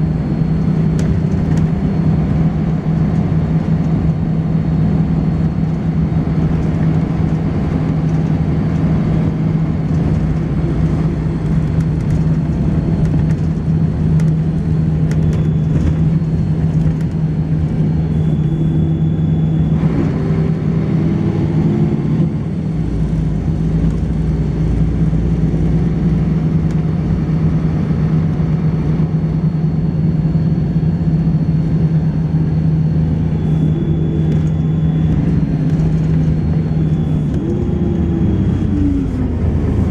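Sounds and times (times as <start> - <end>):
bus engine low drone: 0.0 - 39.9
high-pitched gearbox whine: 8.3 - 23.1, 29.0 - 39.9.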